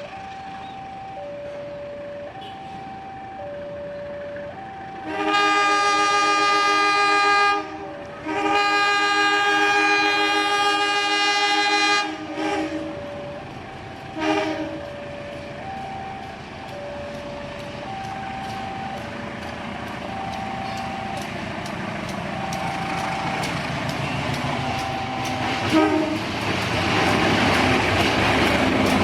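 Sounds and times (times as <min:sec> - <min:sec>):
locomotive air horn blasts: 0:02.4 - 0:02.8, 0:05.0 - 0:13.3, 0:14.1 - 0:15.0, 0:24.0 - 0:26.4.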